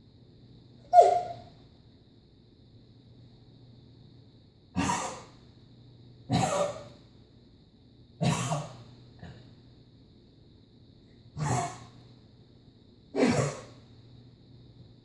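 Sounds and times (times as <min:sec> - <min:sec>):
person coughing: 0:06.3 - 0:06.9, 0:08.2 - 0:09.4, 0:13.2 - 0:13.8.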